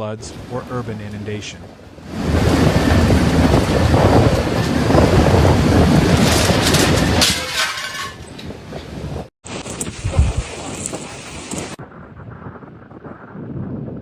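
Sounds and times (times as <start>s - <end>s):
heavy wind: 0.0s - 14.0s
heavy rain: 2.0s - 7.0s.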